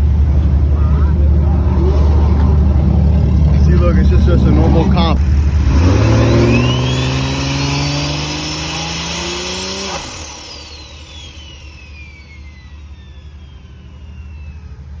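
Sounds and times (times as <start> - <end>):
car engine revving: 0.0 - 15.0
turbo flutter: 1.7 - 15.0
turbo whistle: 5.8 - 15.0.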